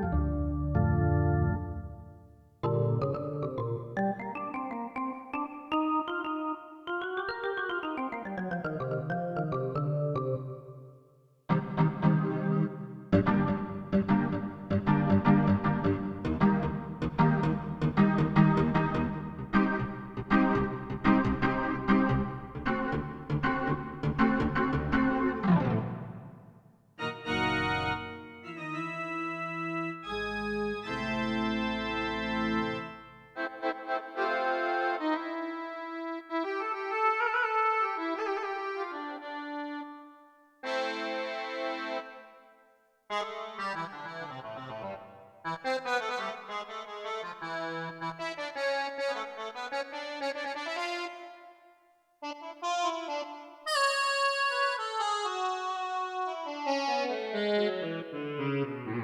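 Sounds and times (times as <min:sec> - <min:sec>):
synthesizer chords: 0:00.0 - 0:10.7, 0:11.5 - 0:33.3.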